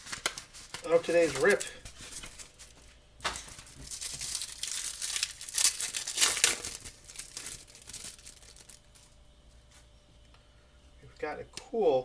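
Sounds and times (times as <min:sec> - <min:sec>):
wrapper tearing and crinkling: 0:00.0 - 0:09.2.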